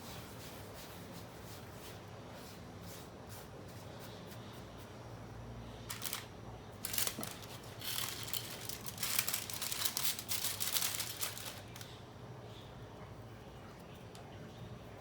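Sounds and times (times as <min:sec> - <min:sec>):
thin sheet rustling and crinkling: 0:05.9 - 0:11.9.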